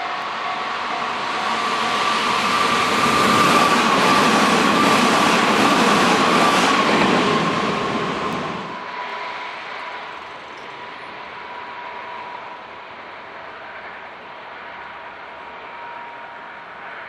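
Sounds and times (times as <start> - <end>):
crossing warning bell ringing: 0.0 - 10.8
electric train passing: 0.0 - 17.0.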